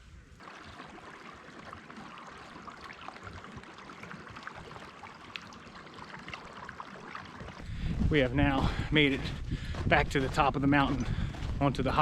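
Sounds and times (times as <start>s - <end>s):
small water splashes: 0.4s - 7.7s
creek water rushing: 0.4s - 7.8s.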